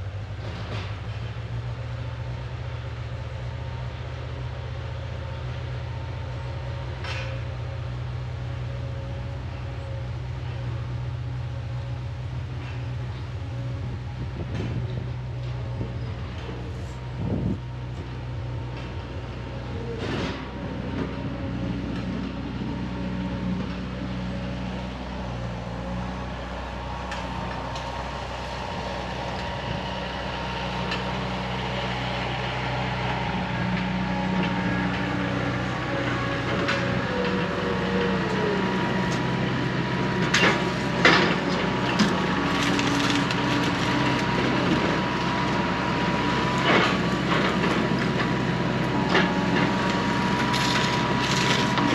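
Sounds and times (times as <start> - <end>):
skid steer engine running: 0.0 - 51.9.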